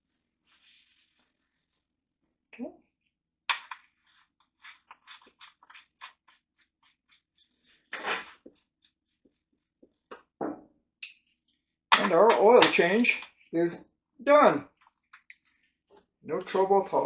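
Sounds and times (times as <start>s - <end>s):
rag rubbing and wiping: 4.0s - 10.0s.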